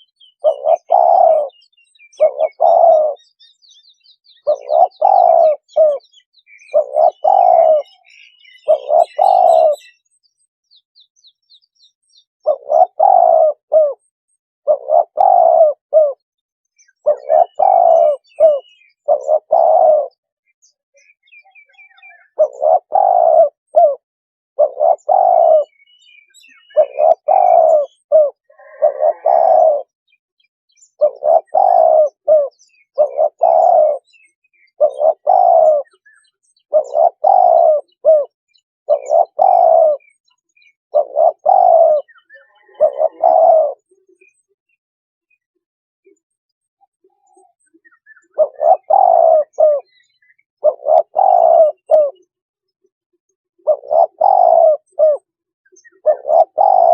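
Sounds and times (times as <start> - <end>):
dove cooing: 0.0 - 3.4, 4.2 - 10.0, 12.4 - 16.2, 16.8 - 20.3, 21.0 - 24.0, 24.6 - 29.9, 30.9 - 44.6, 46.9 - 52.3, 53.6 - 56.9
faint small birds chirping: 0.0 - 24.0, 24.6 - 56.9.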